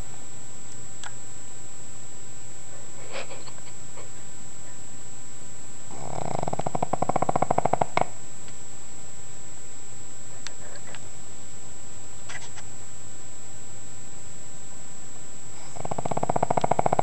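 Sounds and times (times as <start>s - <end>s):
dog snoring rattle: 5.9s - 8.2s, 15.5s - 17.0s
faint sniffs: 12.3s - 12.7s.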